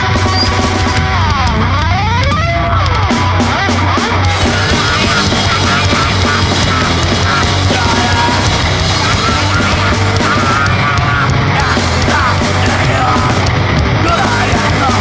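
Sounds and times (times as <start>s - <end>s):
distorted noise music: 0.0s - 15.0s
screeching squeals: 0.1s - 0.8s.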